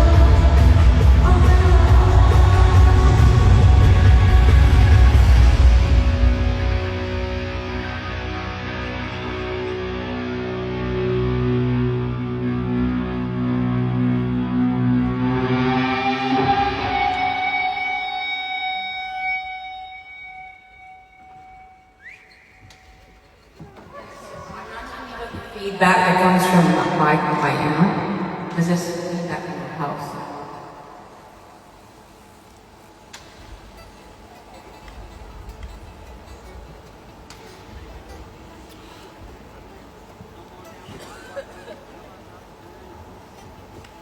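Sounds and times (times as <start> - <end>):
distorted electric guitar: 0.0 - 22.0.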